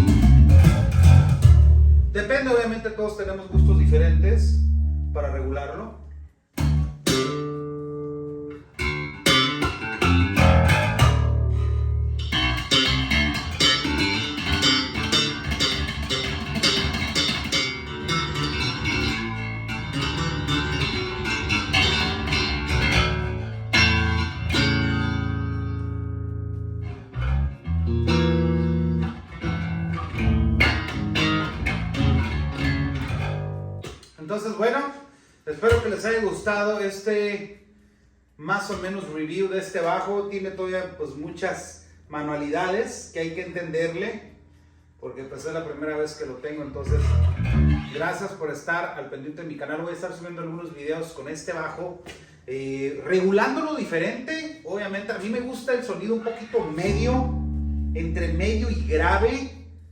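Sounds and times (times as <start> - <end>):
electric bass playing: 0.0 - 34.1, 45.4 - 48.2, 56.3 - 59.9.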